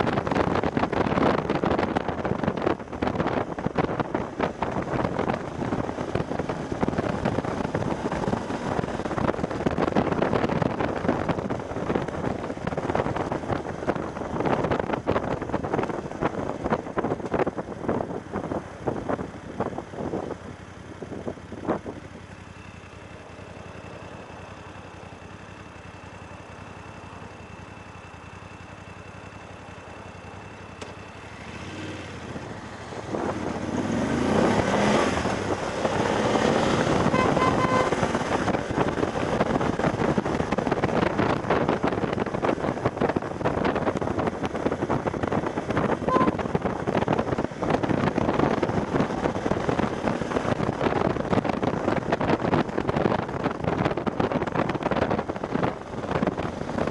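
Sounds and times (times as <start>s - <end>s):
wind buffeting microphone: 0.0s - 20.4s, 32.2s - 56.9s
motorcycle engine accelerating: 0.0s - 56.9s.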